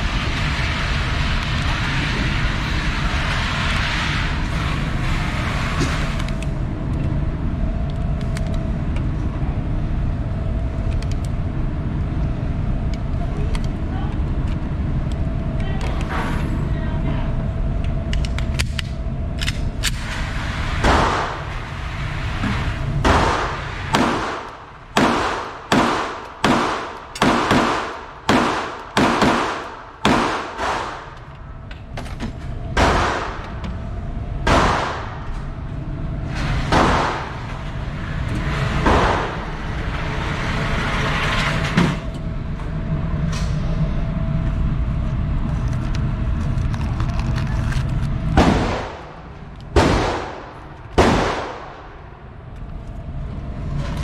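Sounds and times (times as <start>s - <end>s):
steady low rumble: 0.0s - 54.0s
handgun shots echoing: 24.0s - 31.1s.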